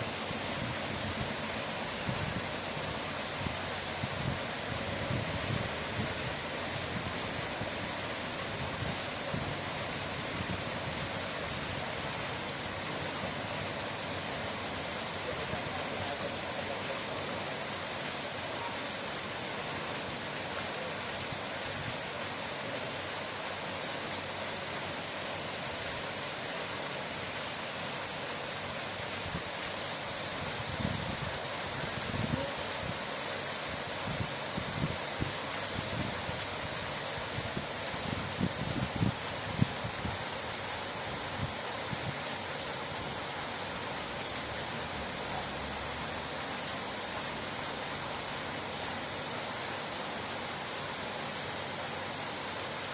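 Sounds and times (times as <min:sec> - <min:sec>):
running water rushing: 0:00.0 - 0:52.9.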